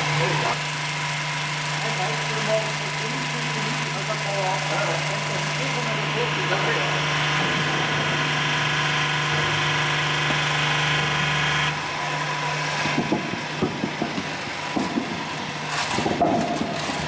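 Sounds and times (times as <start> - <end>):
motor running: 0.0 - 17.0
knocks and clatter on metal: 12.8 - 17.0.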